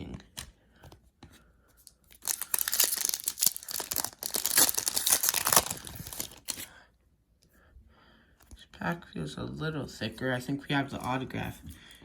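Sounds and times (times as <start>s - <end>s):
wrapper being torn open: 2.1s - 6.6s.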